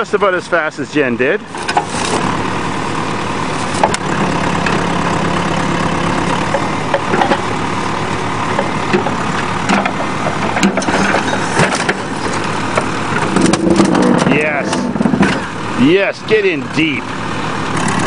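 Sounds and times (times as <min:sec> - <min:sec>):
backhoe engine running: 0:00.0 - 0:18.0
metal cracking and crunching: 0:03.4 - 0:04.9, 0:06.2 - 0:07.6, 0:08.4 - 0:15.6.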